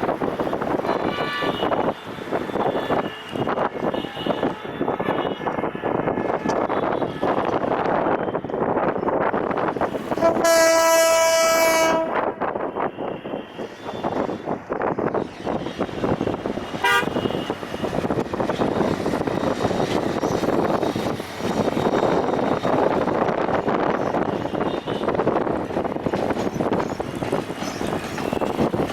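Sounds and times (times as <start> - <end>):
train horn blast: 10.1 - 13.6, 16.8 - 17.6
short train horn toot: 10.2 - 12.4, 16.8 - 17.5
train wheels rattling over track: 13.6 - 28.9.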